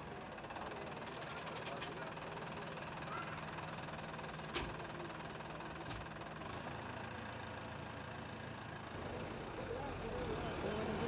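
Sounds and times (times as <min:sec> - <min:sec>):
engine idling: 0:00.0 - 0:11.0.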